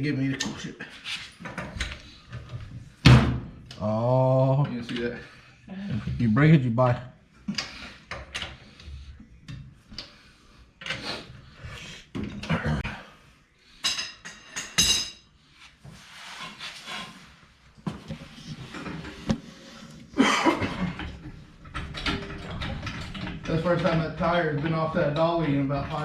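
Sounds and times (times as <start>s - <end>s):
metal tools clanking on floor: 13.8s - 15.3s.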